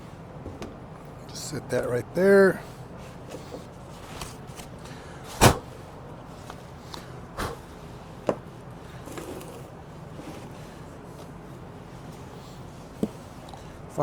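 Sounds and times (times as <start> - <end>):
loud sharp thump: 5.4 - 5.7.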